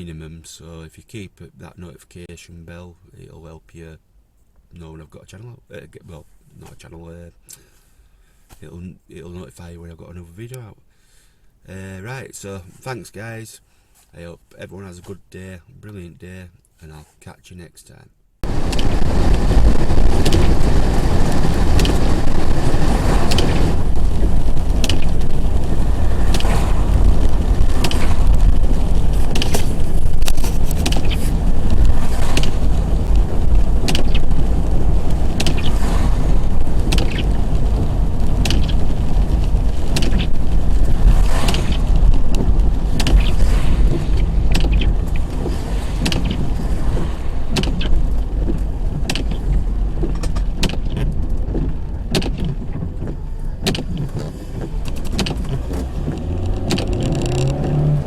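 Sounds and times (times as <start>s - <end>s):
road and engine rumble: 18.4s - 58.0s
clicks and knocks: 20.1s - 20.7s, 21.5s - 22.2s, 23.2s - 25.4s, 27.8s - 32.7s, 36.9s - 37.4s, 39.9s - 40.4s, 41.2s - 57.8s.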